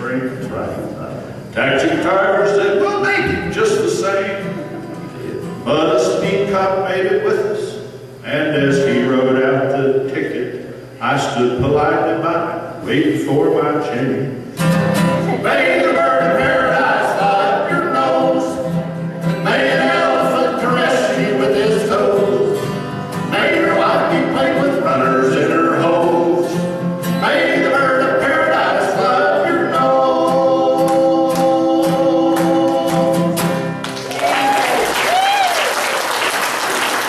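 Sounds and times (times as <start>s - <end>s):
guitar accompaniment: 0.0s - 9.1s, 12.6s - 34.9s
people singing: 15.2s - 33.6s
audience applause: 33.8s - 37.0s.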